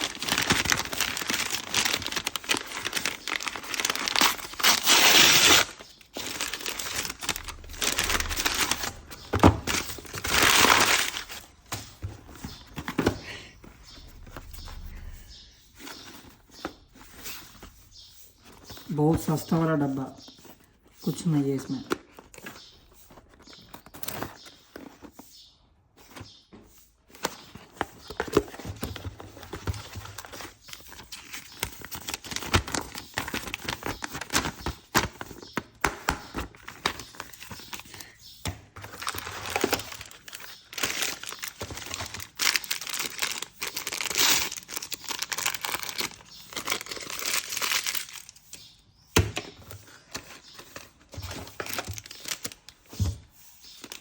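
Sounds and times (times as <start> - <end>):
cardboard and wrapping tearing: 0.0 - 11.5, 27.5 - 35.5, 38.8 - 48.5, 50.1 - 52.8.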